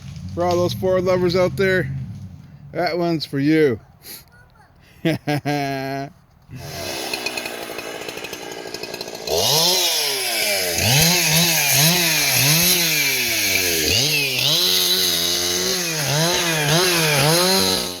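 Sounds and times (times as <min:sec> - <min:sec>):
chainsaw engine revving: 0:00.0 - 0:02.8, 0:06.5 - 0:18.0.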